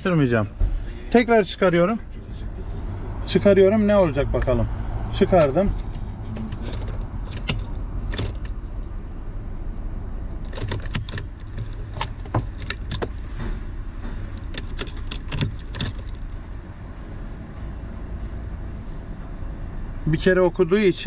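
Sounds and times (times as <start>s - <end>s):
keys jangling: 5.4s - 8.9s, 10.3s - 13.3s, 14.4s - 16.5s.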